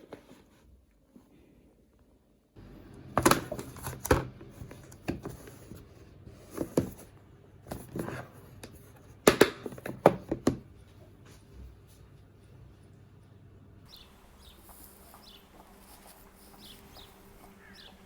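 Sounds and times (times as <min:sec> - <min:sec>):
low steady hum: 0:01.3 - 0:18.0
crinkling: 0:13.9 - 0:18.0.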